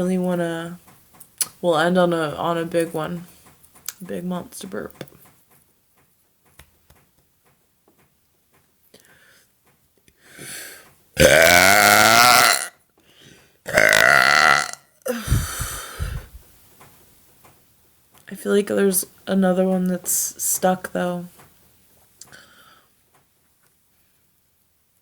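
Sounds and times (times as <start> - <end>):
woman belching: 11.2 - 12.7, 13.7 - 15.6.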